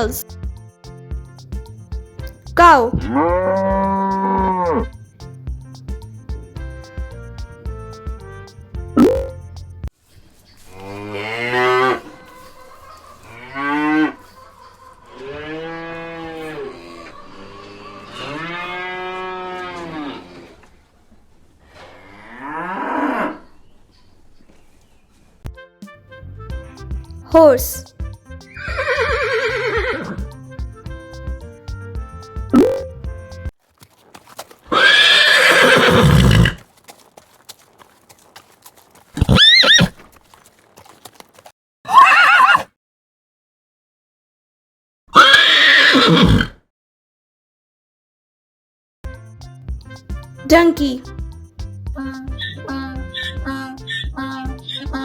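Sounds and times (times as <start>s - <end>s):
cow mooing: 3.0s - 4.9s, 10.8s - 12.5s, 13.2s - 14.4s, 15.1s - 20.6s, 21.8s - 23.5s
horse neighing: 15.1s - 20.7s, 28.5s - 30.2s, 34.2s - 41.2s, 41.9s - 42.7s, 45.1s - 46.6s
faint hoof clops: 33.6s - 41.5s.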